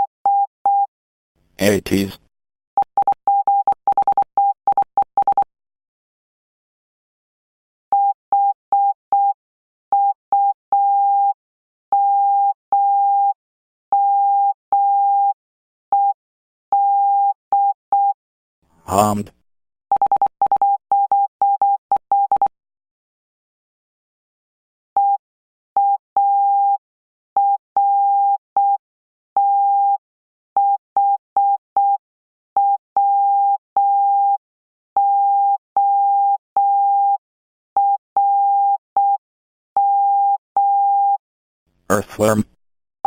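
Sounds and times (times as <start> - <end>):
morse code beeps: 2.9 - 5.4, 19.9 - 22.5.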